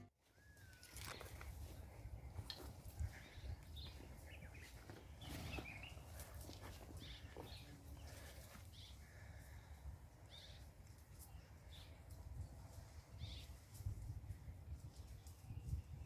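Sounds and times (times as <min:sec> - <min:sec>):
bird calls and chirps: 0:00.3 - 0:12.5, 0:13.2 - 0:13.6.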